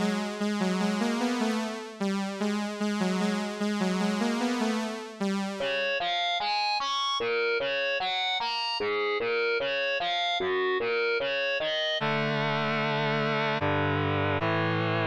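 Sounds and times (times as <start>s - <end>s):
synthesized electronic music: 0.0s - 6.1s.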